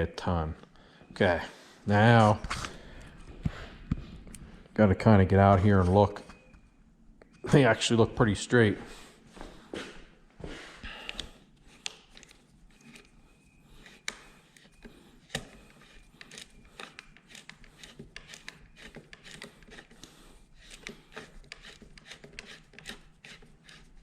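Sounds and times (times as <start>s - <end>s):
hand tools clicking and scraping: 10.9s - 24.0s.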